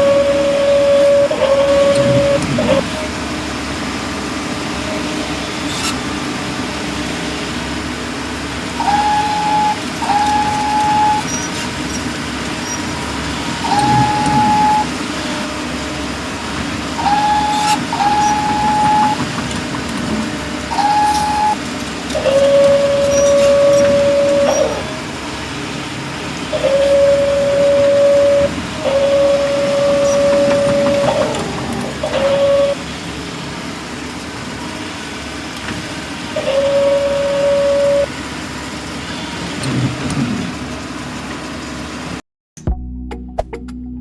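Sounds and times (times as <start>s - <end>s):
small electric motor whining: 8.8s - 16.1s, 17.0s - 19.2s, 20.7s - 25.0s.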